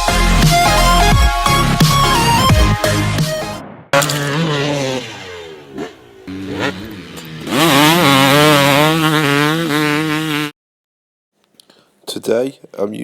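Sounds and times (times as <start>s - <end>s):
dirt bike engine revving: 0.5s - 3.2s, 4.0s - 10.6s.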